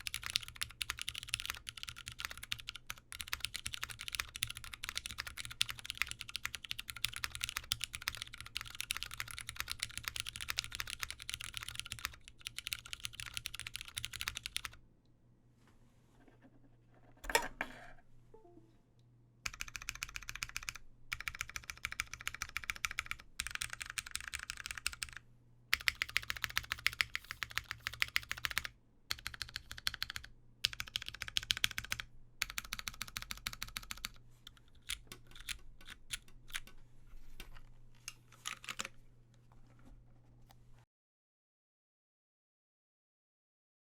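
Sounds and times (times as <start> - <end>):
mechanical keyboard typing: 0.0 - 14.8, 19.5 - 36.8, 38.4 - 38.9.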